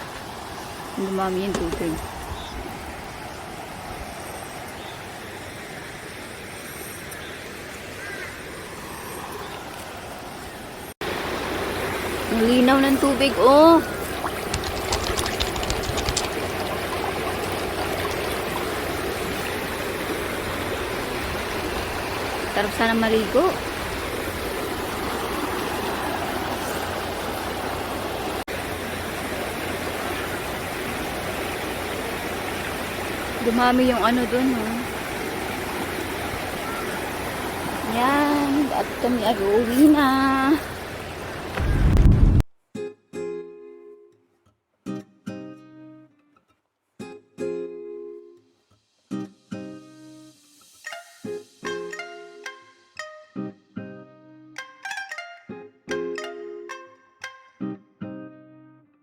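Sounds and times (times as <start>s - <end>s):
mountain stream rushing: 0.0s - 42.4s.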